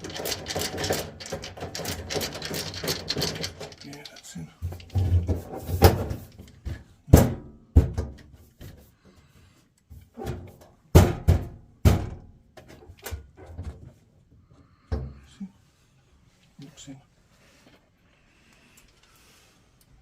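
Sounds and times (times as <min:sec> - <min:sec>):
sharp metal knocks and clunks: 0:10.2 - 0:13.8.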